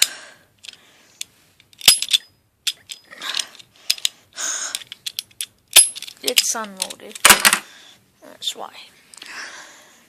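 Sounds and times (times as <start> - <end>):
gun mechanism clicking: 0.0 - 7.6
gun slide rattling: 1.6 - 4.1, 4.8 - 7.6.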